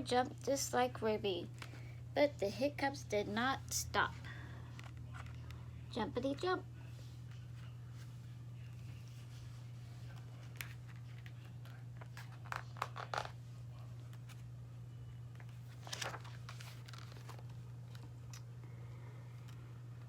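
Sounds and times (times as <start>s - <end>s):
low steady hum: 0.0s - 20.0s
paper page turning: 8.8s - 13.4s, 15.4s - 18.4s.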